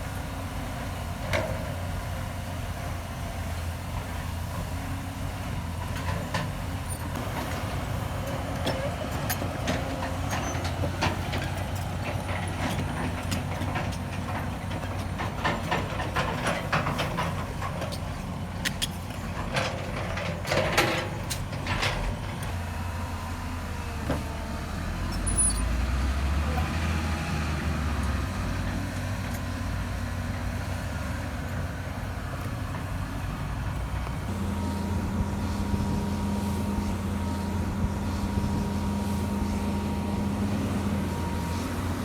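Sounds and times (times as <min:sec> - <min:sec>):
diesel machinery running: 0:00.0 - 0:42.0
short squeaks: 0:25.0 - 0:25.8.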